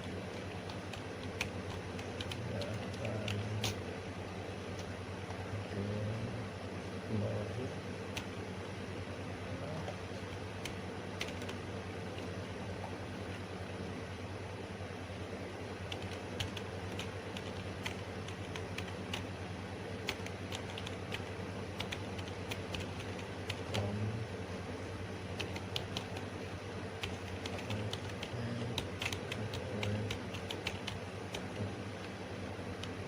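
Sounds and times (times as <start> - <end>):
keyboard typing: 0.0 - 3.8, 8.1 - 8.4, 9.8 - 12.4, 15.9 - 19.3, 20.0 - 24.1, 25.3 - 26.3, 27.0 - 32.2
low background hum: 0.0 - 33.0.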